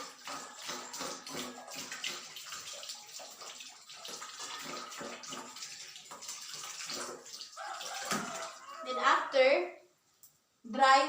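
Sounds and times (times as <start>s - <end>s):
tap water running and splashing: 0.0s - 8.9s.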